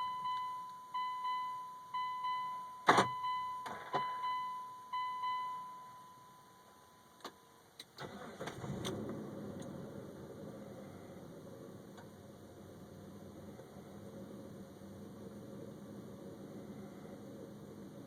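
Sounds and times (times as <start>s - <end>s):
vehicle warning chime beeping: 0.0s - 8.3s
car engine cranking and idling: 7.2s - 18.0s.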